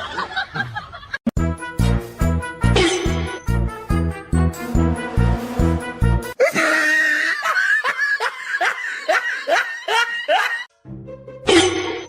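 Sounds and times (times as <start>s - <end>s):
person laughing hard: 0.0s - 1.2s, 6.4s - 10.7s.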